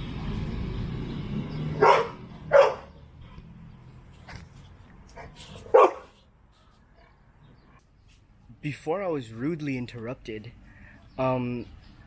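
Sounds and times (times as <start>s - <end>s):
dog barking: 1.8s - 2.9s, 5.6s - 6.2s.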